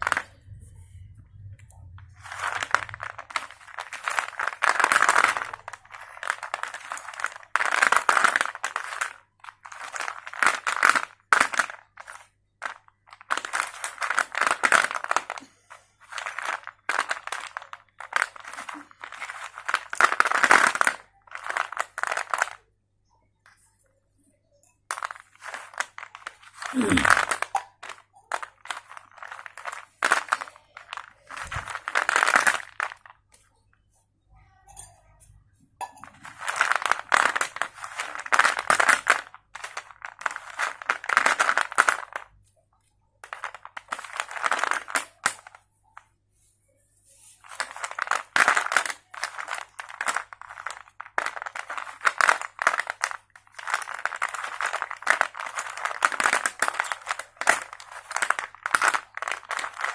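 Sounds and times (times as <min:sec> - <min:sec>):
slate pencil crunching: 0:02.0 - 0:12.3, 0:47.4 - 0:59.9.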